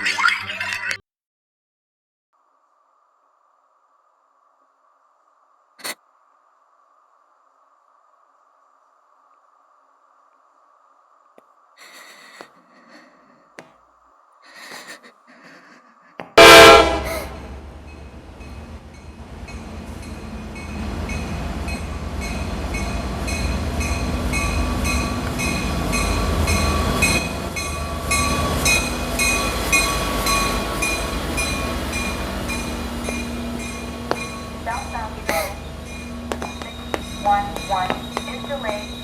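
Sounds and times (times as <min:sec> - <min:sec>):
train horn blast: 0:16.4 - 0:17.7, 0:25.8 - 0:39.0
train wheels clickety-clack: 0:18.4 - 0:39.0.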